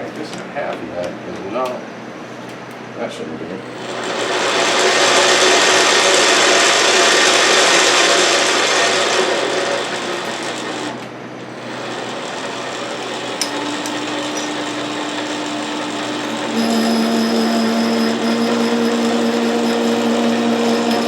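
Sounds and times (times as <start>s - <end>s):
lathe cutting grinding scrape: 3.6s - 21.0s
lathe motor humming: 3.6s - 21.0s.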